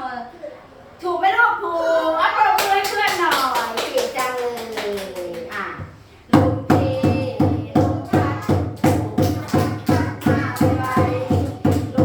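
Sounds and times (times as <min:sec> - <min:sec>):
music with percussion beat: 0:06.4 - 0:12.0.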